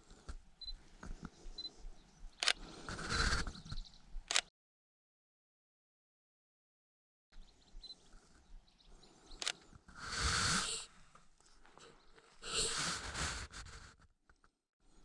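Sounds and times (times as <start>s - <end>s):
sharp click: 2.4s - 2.6s, 4.3s - 4.5s
person breathing heavily: 2.6s - 3.6s, 8.9s - 14.0s.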